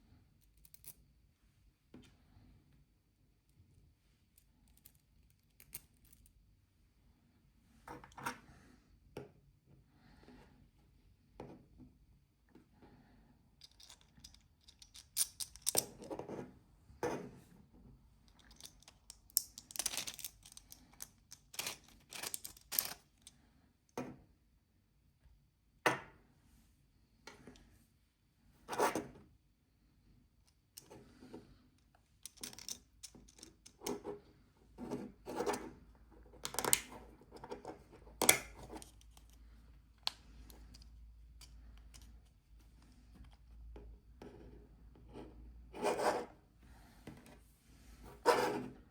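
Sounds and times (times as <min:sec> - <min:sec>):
plastic parts clicking and scraping: 0:13.6 - 0:16.2, 0:18.3 - 0:23.4, 0:32.2 - 0:34.0, 0:36.4 - 0:39.4, 0:40.0 - 0:42.4.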